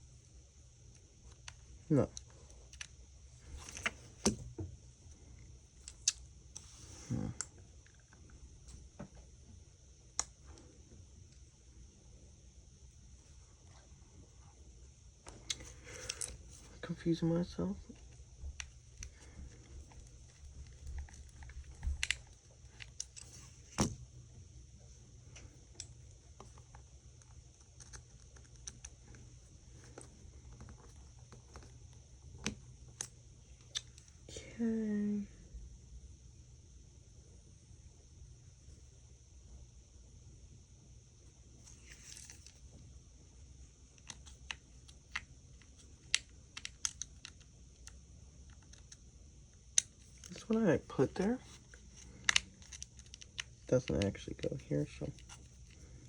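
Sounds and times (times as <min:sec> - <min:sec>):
small parts clicking and tapping: 0:00.9 - 0:03.0, 0:15.2 - 0:16.4, 0:18.0 - 0:24.0, 0:25.3 - 0:34.2, 0:43.9 - 0:56.0.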